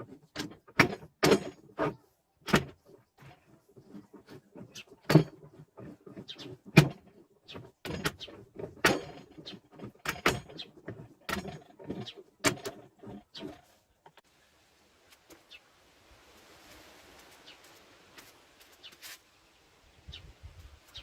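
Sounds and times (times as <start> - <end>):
metal parts knocking and clicking: 0.0 - 14.2.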